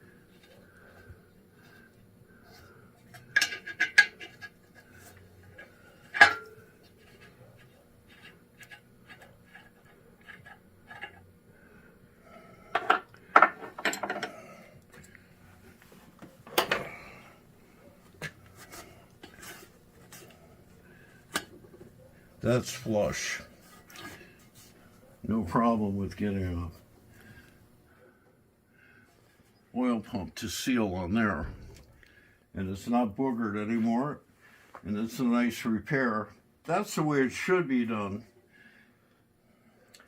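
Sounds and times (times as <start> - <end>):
metal tools clinking on metal: 5.6 - 6.6, 12.7 - 14.4.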